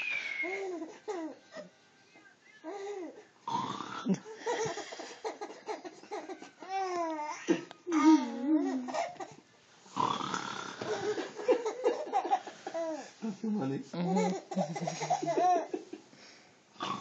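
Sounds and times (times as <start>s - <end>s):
baby laughing and babbling: 0.4s - 1.4s, 4.5s - 9.4s.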